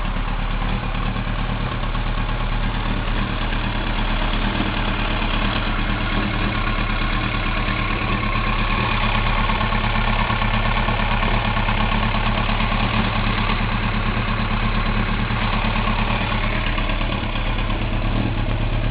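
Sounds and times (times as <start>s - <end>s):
motorcycle engine idling: 0.0s - 18.9s.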